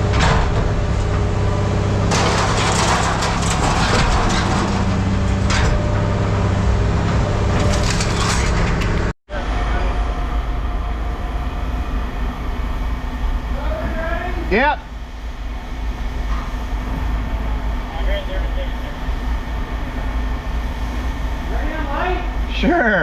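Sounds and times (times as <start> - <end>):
scrap metal crunching: 0.0 - 9.2
machine drone: 0.0 - 23.0.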